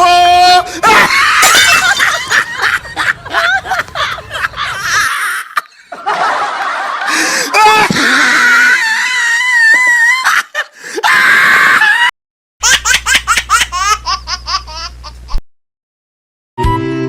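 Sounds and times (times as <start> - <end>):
steady low hum: 0.6 - 5.1
high-pitched laughter: 0.8 - 7.1, 8.1 - 15.4.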